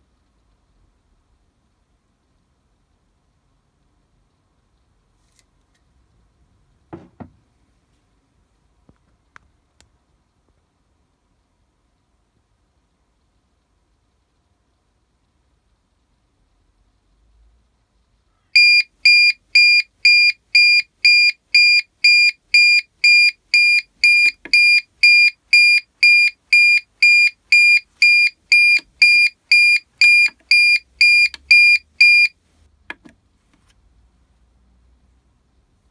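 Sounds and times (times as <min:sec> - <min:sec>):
high-pitched alarm beeps: 0:18.6 - 0:32.3.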